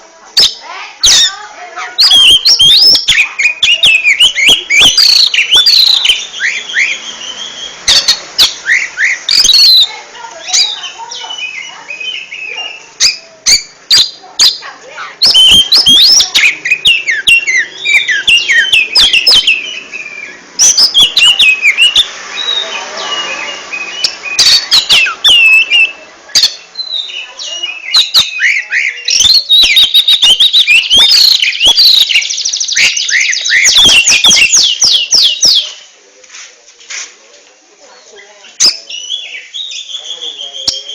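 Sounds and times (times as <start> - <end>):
bird singing whistles and chirps: 0.4 - 35.8, 38.0 - 40.9.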